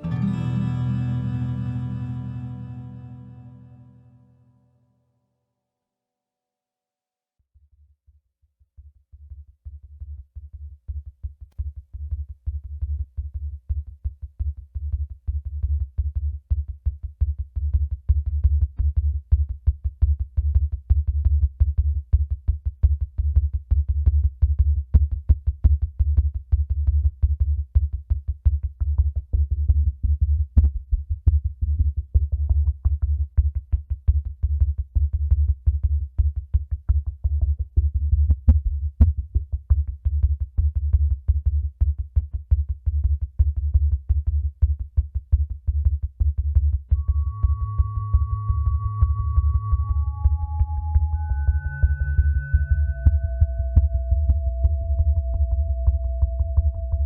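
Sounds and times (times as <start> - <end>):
drum machine pulse: 9.8 - 57.0
deep throbbing synth bass: 47.0 - 57.0
faint held synth tones: 47.0 - 57.0.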